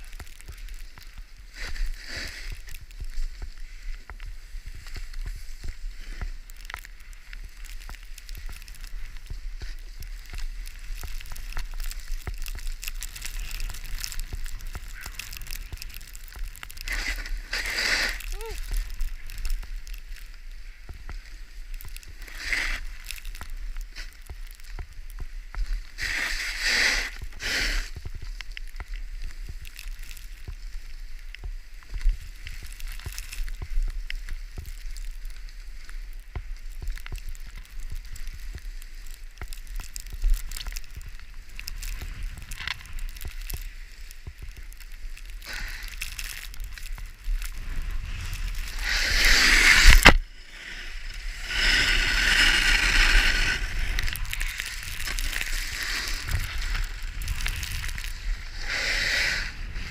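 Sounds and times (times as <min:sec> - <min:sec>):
skis scraping over snow: 0:00.0 - 0:59.9
wind rumble on microphone: 0:46.0 - 0:59.9.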